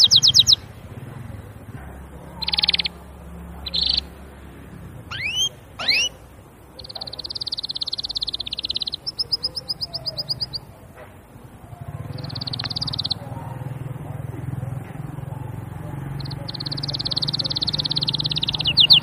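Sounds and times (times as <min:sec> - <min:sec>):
canary singing: 0:00.0 - 0:19.0.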